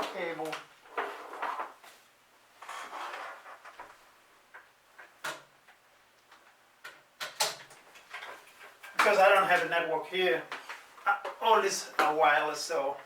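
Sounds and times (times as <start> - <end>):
cable and plastic handling noise: 4.5 - 9.7.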